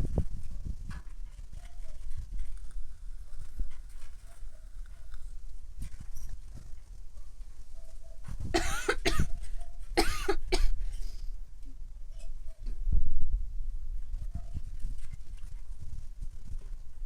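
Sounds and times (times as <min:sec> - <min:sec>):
woman coughing: 0:08.6 - 0:09.4, 0:10.0 - 0:10.8.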